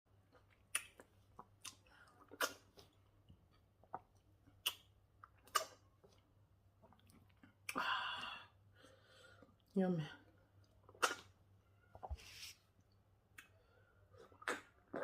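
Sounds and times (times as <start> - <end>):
wet mouth smacks while eating: 0.7 - 2.9, 4.6 - 5.8, 10.8 - 11.3.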